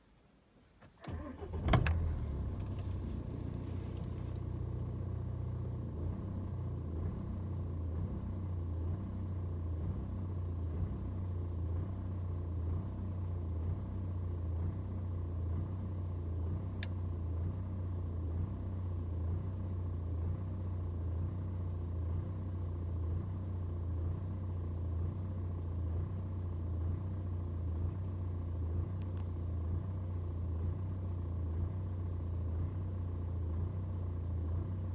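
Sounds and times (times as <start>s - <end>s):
diesel engine cranking and starting: 0.9s - 4.8s.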